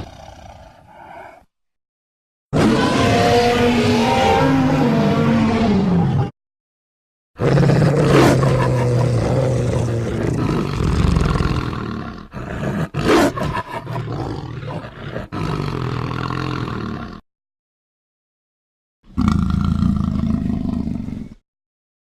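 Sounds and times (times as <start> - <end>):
creature roar: 0.0 - 1.4, 2.6 - 6.3, 7.4 - 17.2.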